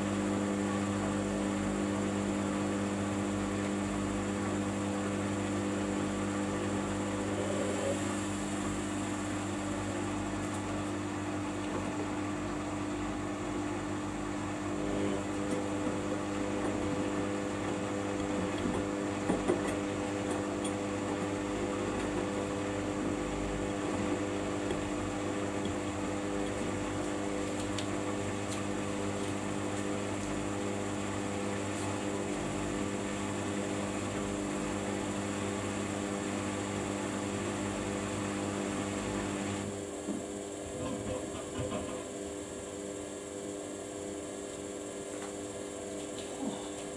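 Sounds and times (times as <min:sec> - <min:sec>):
washing machine drum spinning: 0:08.0 - 0:43.0.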